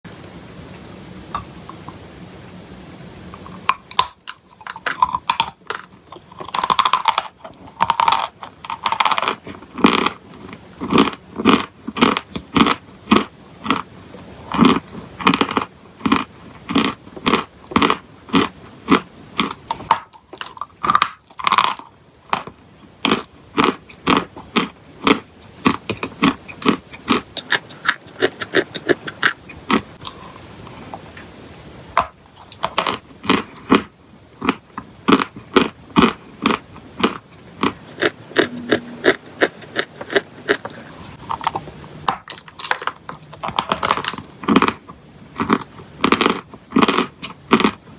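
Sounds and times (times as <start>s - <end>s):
chewing crunchy chalk: 23.1s - 30.8s, 32.0s - 44.8s, 45.4s - 47.8s.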